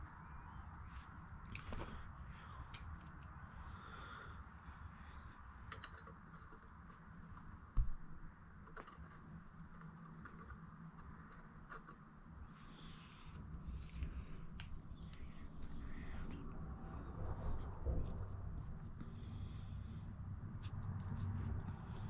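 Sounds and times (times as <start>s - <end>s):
small parts clicking and scratching: 5.2s - 16.7s
dull thump: 7.8s - 8.2s.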